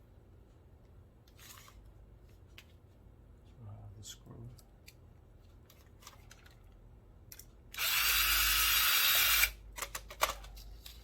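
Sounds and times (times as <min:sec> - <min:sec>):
power drill driving a screw: 0:07.8 - 0:09.6.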